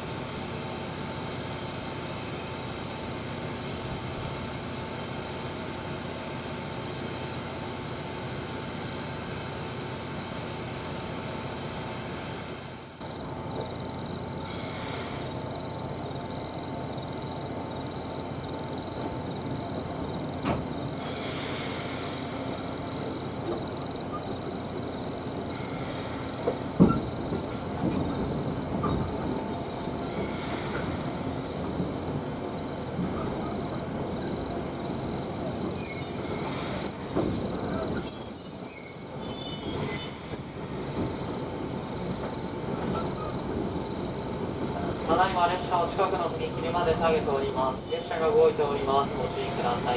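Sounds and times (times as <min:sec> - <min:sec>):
steam hissing: 0:14.5 - 0:15.5, 0:21.0 - 0:23.8, 0:25.5 - 0:28.6, 0:29.3 - 0:49.9.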